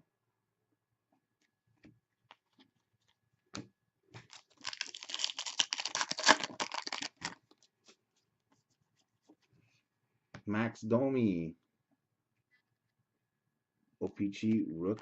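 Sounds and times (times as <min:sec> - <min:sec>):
wrapper crinkling and tearing: 0:04.2 - 0:07.4.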